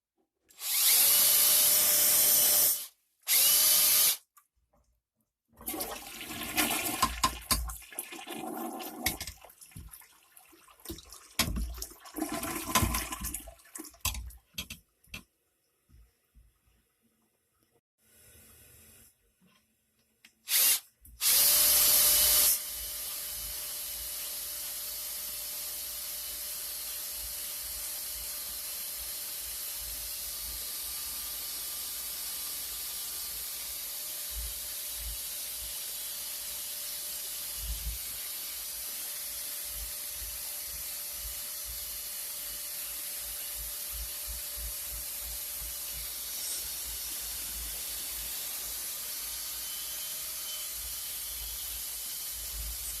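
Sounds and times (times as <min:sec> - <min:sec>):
toilet flushing: 0:05.6 - 0:14.0.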